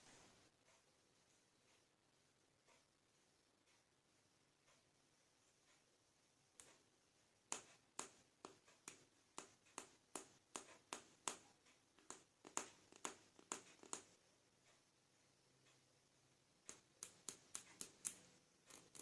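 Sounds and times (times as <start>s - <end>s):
plastic toy pieces clicking: 17.0s - 19.0s.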